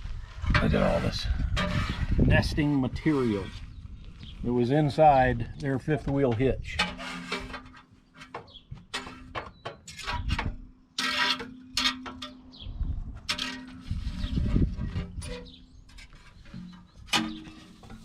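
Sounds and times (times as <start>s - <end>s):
rustling and clattering handling: 5.8s - 18.0s.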